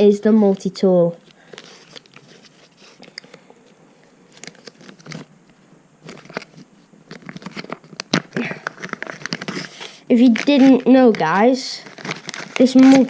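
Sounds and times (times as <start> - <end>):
packaging crinkling and clicking: 1.5 - 3.4, 4.3 - 13.0.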